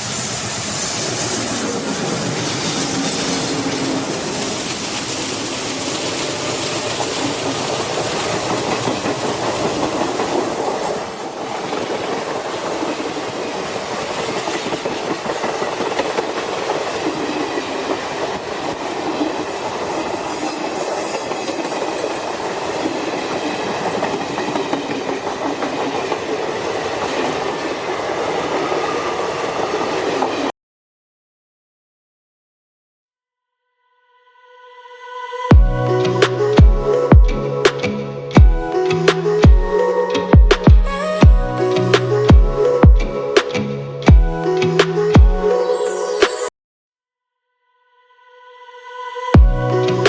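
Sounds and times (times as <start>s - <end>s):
passenger train on track: 0.0s - 30.5s, 44.4s - 46.5s.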